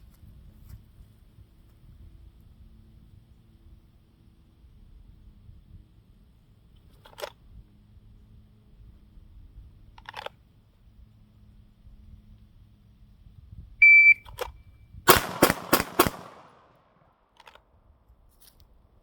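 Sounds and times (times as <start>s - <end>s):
shot timer beep: 13.8s - 14.3s
pistol shots with echo: 15.1s - 16.8s.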